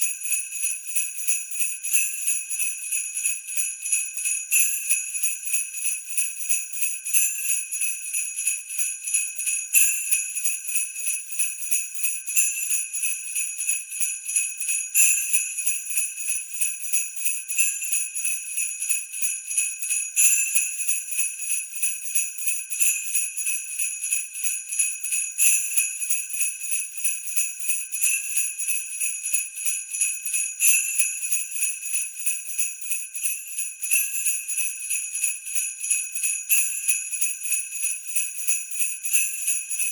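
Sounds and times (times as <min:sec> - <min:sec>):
sleigh bells jingling: 0:08.4 - 0:39.9.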